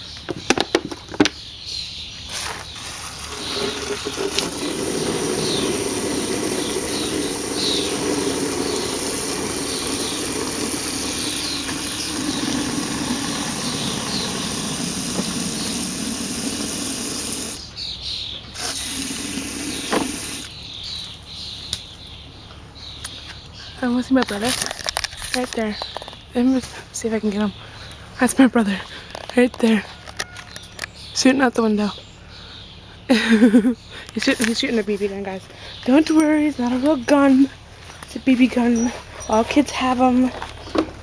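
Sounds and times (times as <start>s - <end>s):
water pouring into container: 3.0s - 17.6s, 18.6s - 20.6s.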